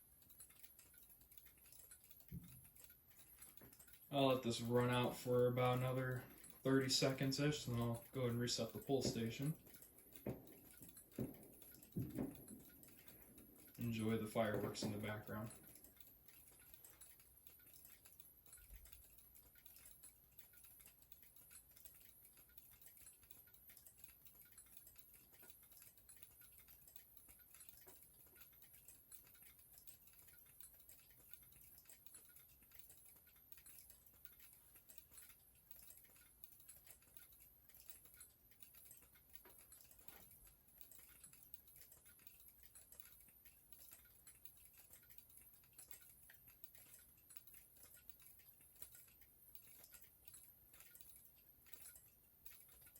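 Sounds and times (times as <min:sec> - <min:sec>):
faint irregular strobe clicking: 0:00.0 - 0:52.9.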